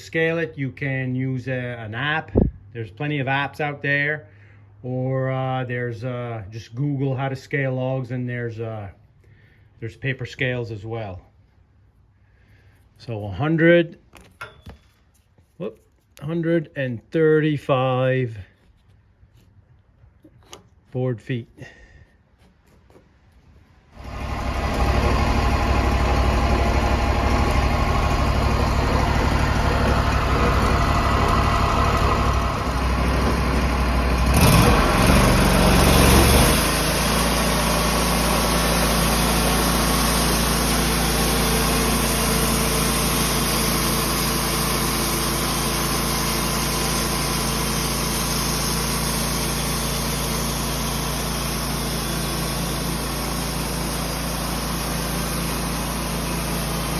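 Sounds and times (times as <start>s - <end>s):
engine running: 23.9s - 56.9s.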